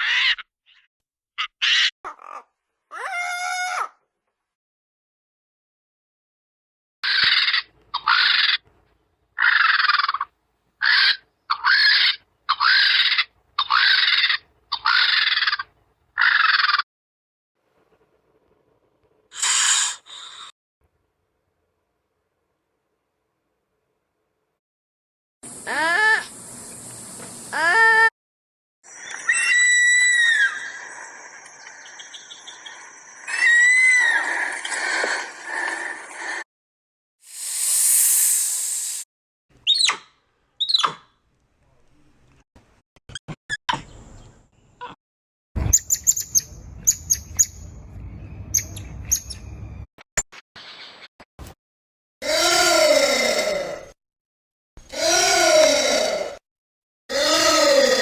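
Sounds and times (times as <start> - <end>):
bird screeching calls: 10.8 - 15.6, 19.4 - 20.5, 28.9 - 31.1, 31.8 - 34.5.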